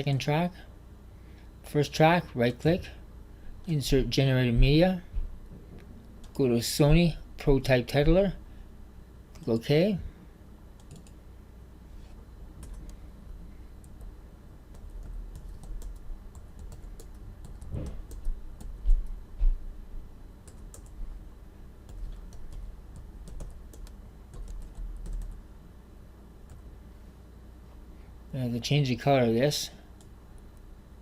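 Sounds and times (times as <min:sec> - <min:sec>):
typing on computer keyboard: 0:10.8 - 0:11.2, 0:14.7 - 0:18.7, 0:20.4 - 0:21.0, 0:21.9 - 0:25.4.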